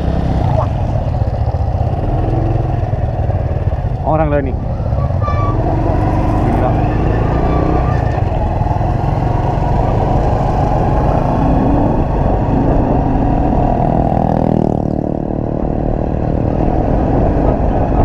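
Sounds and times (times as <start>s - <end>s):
motorcycle engine running: 0.0s - 18.0s.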